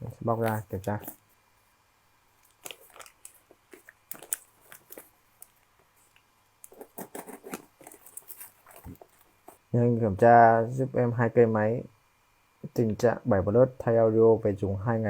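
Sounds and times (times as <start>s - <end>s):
packaging crackling and clicking: 2.4s - 9.6s.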